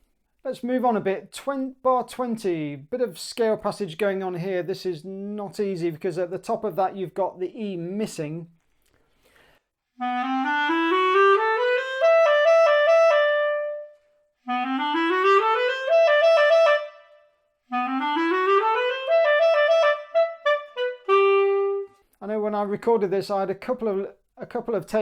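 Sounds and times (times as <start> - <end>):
clarinet playing rising scale: 10.0 - 22.1.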